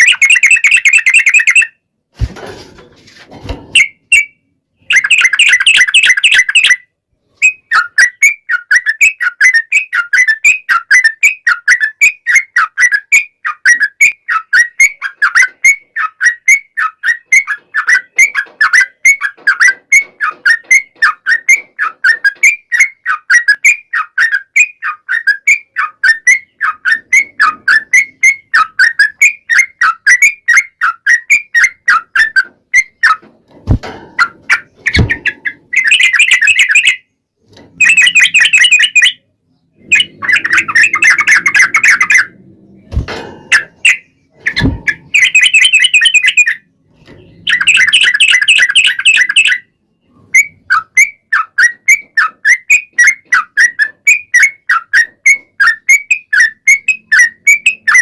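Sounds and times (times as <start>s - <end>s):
bird harsh chattering: 0.0s - 1.7s, 4.9s - 6.8s, 34.2s - 37.0s, 37.8s - 39.2s, 39.8s - 42.4s, 43.5s - 46.6s, 47.4s - 49.6s
bird chirping: 0.0s - 1.8s, 3.7s - 58.0s
sharp knocks: 33.2s - 35.8s, 42.8s - 43.8s, 44.4s - 45.2s.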